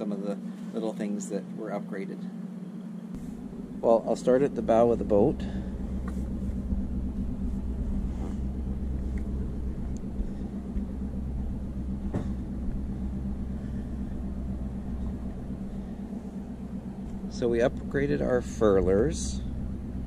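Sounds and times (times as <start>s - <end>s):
engine running with low hum: 0.0s - 20.0s.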